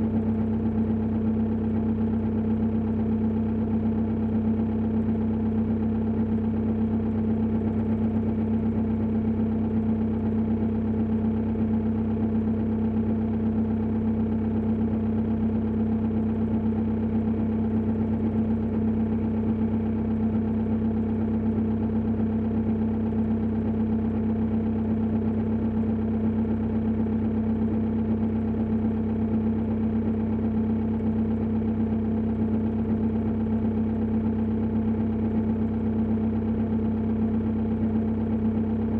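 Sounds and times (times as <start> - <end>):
engine knocking at idle: 0.0 - 38.9.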